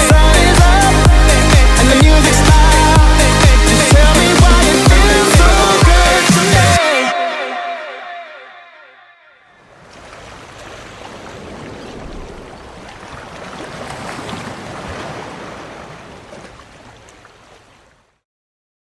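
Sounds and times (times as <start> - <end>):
rushing water: 0.0 - 7.1, 9.6 - 18.2
wind noise: 9.7 - 14.7
heavy low rumble: 11.7 - 13.0.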